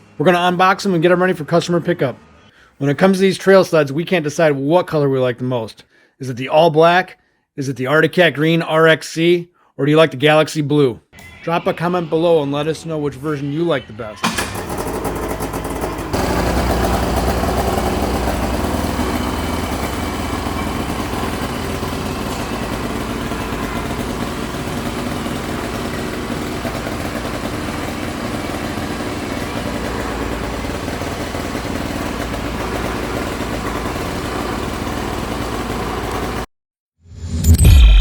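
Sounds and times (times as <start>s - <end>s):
snowmobile engine idling: 14.4s - 36.5s.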